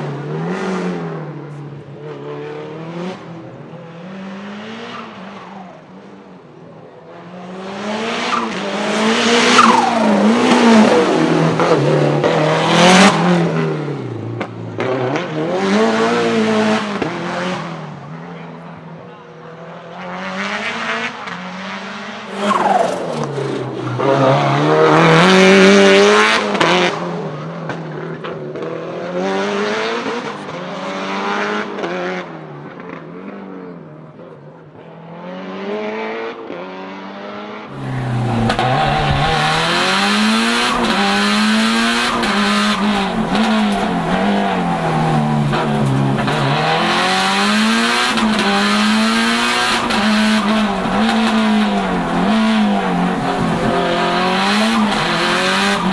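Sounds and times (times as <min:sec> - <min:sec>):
car engine accelerating and shifting: 0:00.0 - 0:18.3, 0:19.2 - 0:33.5, 0:35.1 - 0:55.9
steady rushing noise: 0:22.3 - 0:24.0.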